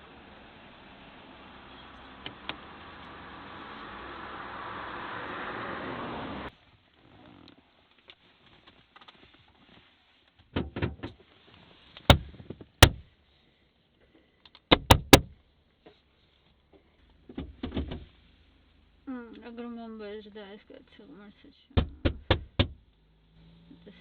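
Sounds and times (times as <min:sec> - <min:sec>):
sharp knocks and clunks: 0:10.5 - 0:11.2, 0:12.1 - 0:13.1, 0:14.7 - 0:15.4, 0:17.3 - 0:18.0, 0:21.8 - 0:22.8.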